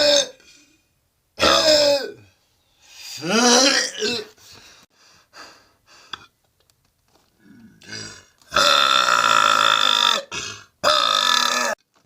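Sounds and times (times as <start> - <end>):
man burping: 1.4 - 2.3, 3.2 - 4.4, 7.4 - 11.8.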